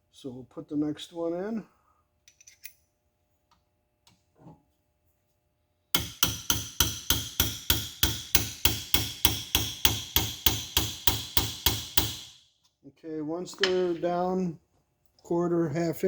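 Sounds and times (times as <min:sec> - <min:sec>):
hammer tapping on metal: 0:06.0 - 0:12.3, 0:13.6 - 0:14.1.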